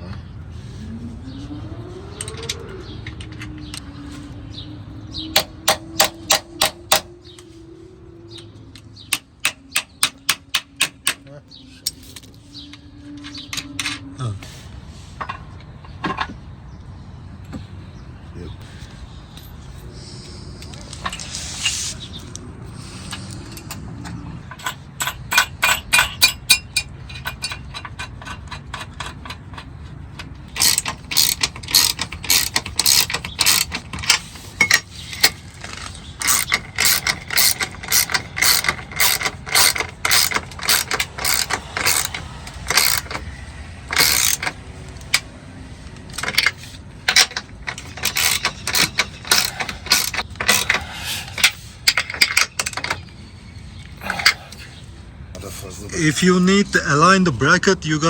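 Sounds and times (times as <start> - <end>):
ratchet wrench clicking: 23.1 - 43.3, 43.9 - 45.3, 46.1 - 53.1.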